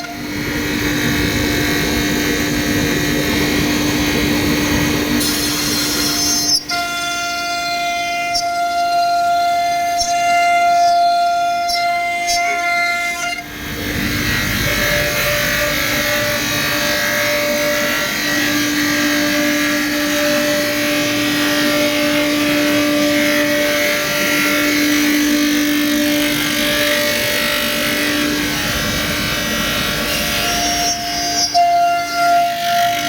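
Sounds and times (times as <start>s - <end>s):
router bit cutting hiss: 0.0s - 10.2s
router spindle whine: 0.0s - 33.0s.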